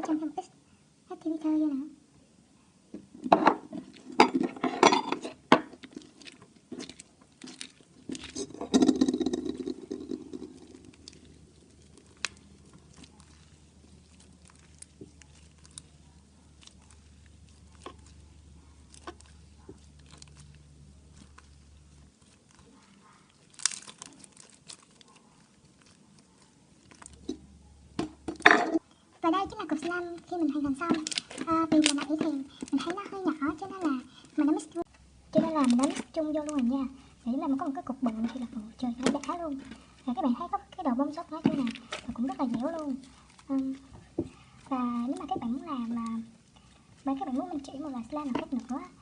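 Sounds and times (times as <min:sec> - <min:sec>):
slime squishing and popping: 0:05.2 - 0:28.7, 0:29.4 - 0:34.6, 0:35.3 - 0:39.9.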